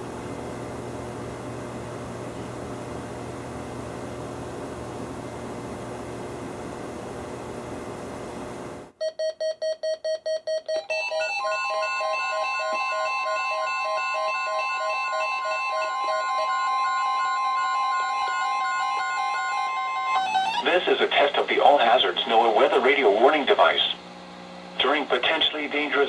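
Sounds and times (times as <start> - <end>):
rapid alarm beeping: 9.0 - 21.3
steady alarm tone: 9.0 - 24.1
radio hiss: 20.6 - 26.0.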